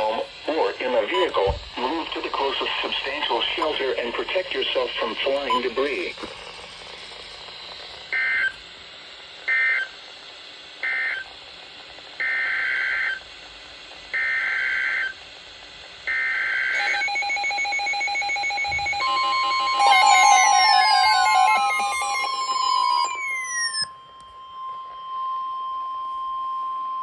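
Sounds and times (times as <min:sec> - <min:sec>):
steady electronic alert tone: 0:16.8 - 0:24.0.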